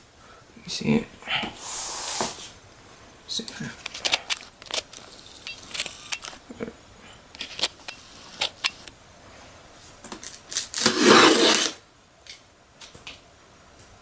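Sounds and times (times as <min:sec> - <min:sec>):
packaging rustling and scraping: 0:03.6 - 0:06.4, 0:07.4 - 0:08.9, 0:10.1 - 0:11.8.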